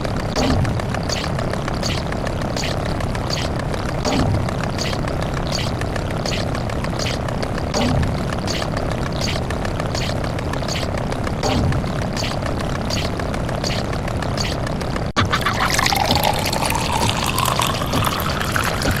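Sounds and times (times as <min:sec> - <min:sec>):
noisy loop with quick clicks: 0:00.0 - 0:19.0
water pouring into container: 0:15.3 - 0:19.0.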